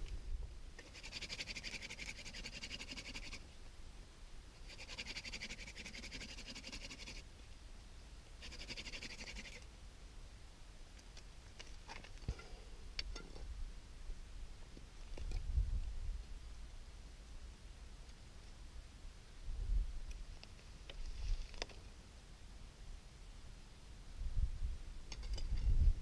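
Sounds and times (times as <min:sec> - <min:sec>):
wooden spindle rasping on board: 0:00.9 - 0:03.4, 0:04.7 - 0:07.2.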